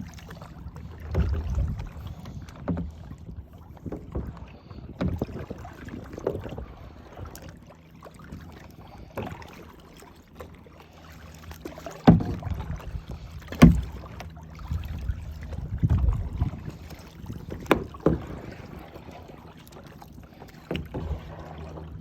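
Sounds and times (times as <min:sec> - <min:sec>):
paddle strokes in water: 0:00.0 - 0:22.0
water swishing against hull: 0:00.0 - 0:22.0
muffled rumble: 0:00.8 - 0:03.2.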